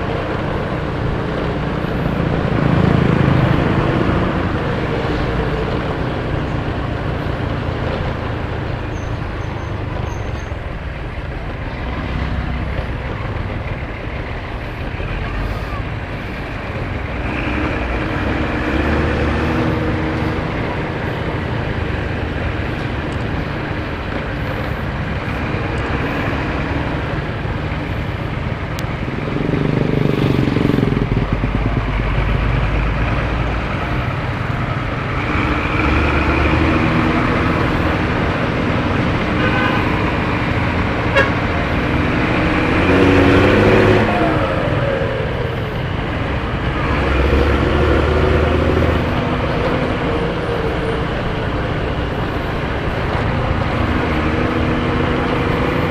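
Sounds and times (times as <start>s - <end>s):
bus engine and exhaust: 0.0s - 55.9s
horn blasts: 39.3s - 40.1s, 41.0s - 41.5s.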